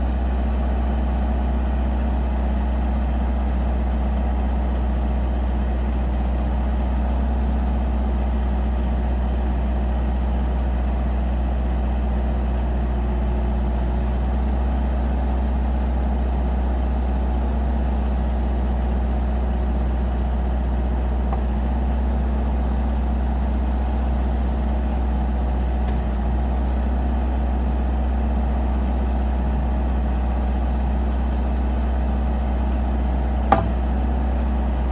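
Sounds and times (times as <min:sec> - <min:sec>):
diesel engine idling: 0:00.0 - 0:34.9.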